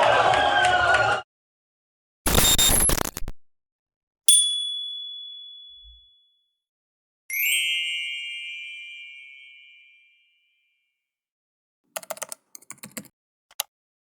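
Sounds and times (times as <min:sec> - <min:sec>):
rich bell strike: 0:04.3 - 0:06.0
high clear bell ding: 0:04.3 - 0:06.2.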